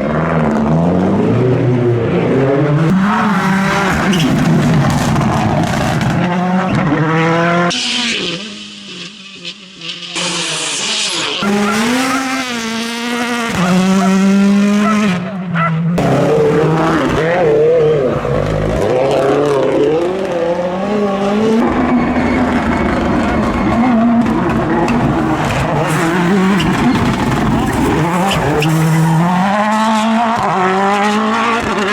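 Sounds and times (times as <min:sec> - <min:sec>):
rally car engines revving: 0:00.0 - 0:31.9.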